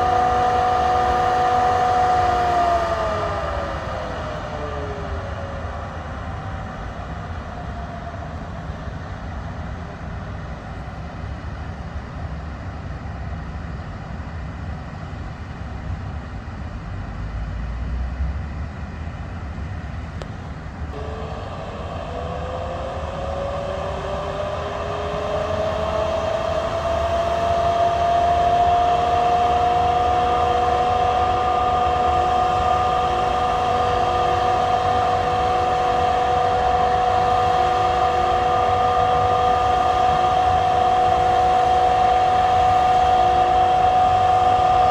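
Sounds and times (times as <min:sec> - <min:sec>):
electric locomotive motor whine: 0:00.0 - 0:12.2, 0:19.6 - 0:44.9.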